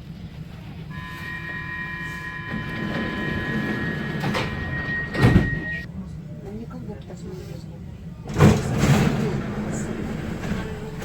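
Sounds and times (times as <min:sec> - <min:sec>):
metro train rumble: 0:00.0 - 0:11.0
high-pitched multi-tone whine: 0:00.9 - 0:05.9.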